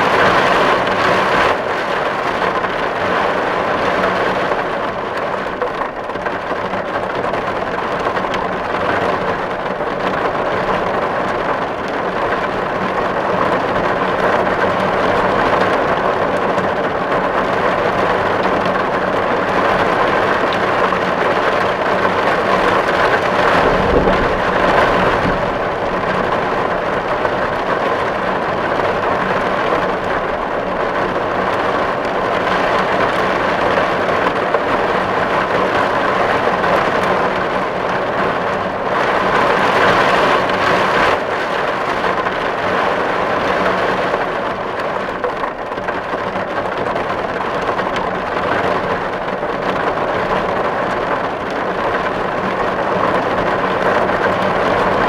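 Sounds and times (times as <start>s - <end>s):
rain drumming on a tin roof: 0.0s - 55.0s
low rumble: 22.4s - 28.6s.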